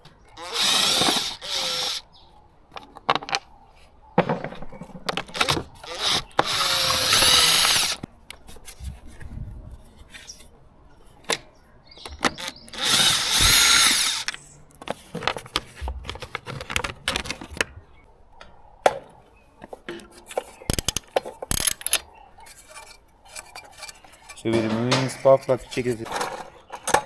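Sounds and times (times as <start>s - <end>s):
power driver whining: 0.4s - 2.0s, 5.3s - 8.1s, 12.2s - 14.4s.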